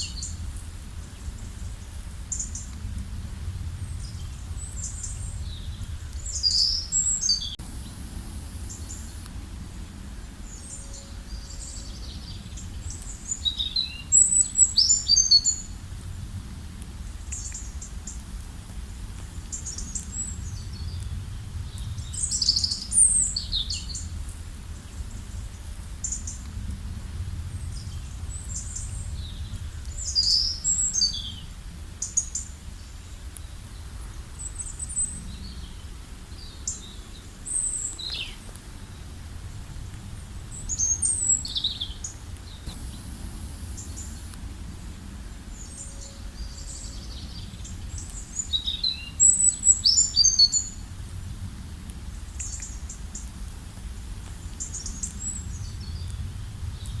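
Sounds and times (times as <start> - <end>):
steady low rumble: 0.0 - 50.0, 50.6 - 57.0
small birds chirping: 3.8 - 15.8, 27.3 - 39.2, 40.2 - 50.8.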